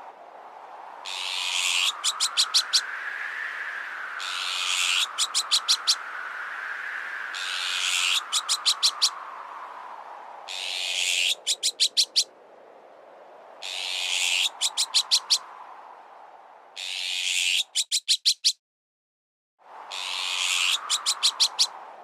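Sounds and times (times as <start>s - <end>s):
strong wind whooshing: 0.0s - 17.4s, 19.6s - 22.0s
magpie harsh alarm calls: 7.4s - 9.1s, 19.9s - 21.7s.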